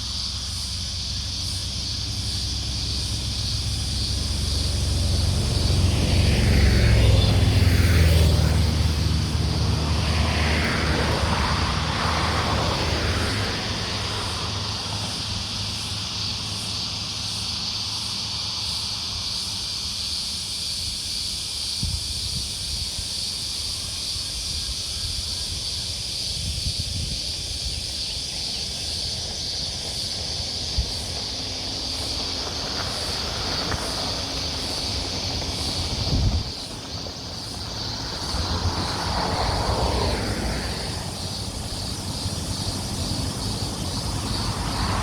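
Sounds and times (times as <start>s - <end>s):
low wind rumble: 0.0s - 17.8s, 21.6s - 45.0s
vehicle passing: 0.1s - 19.4s, 28.5s - 45.0s.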